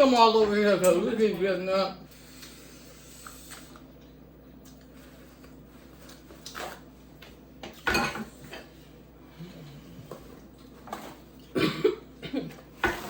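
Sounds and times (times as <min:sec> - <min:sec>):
dishes and cutlery clattering: 0:07.7 - 0:08.6.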